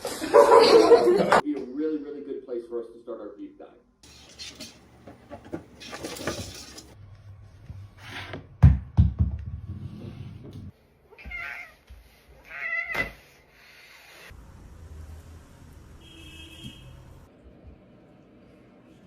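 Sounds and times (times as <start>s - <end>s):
cat meowing: 11.1s - 11.8s.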